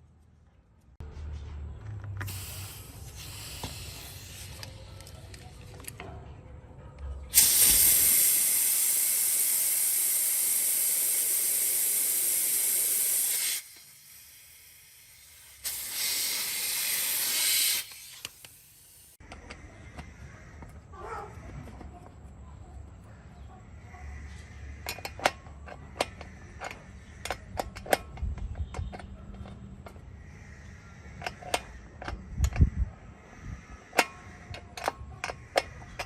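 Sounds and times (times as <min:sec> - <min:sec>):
pressurised spray hissing: 0:02.3 - 0:04.8, 0:07.3 - 0:19.2.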